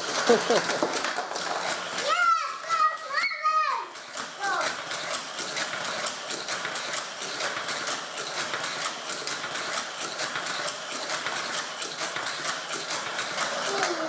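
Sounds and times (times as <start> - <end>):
toy motor whirring: 0.0 - 14.0.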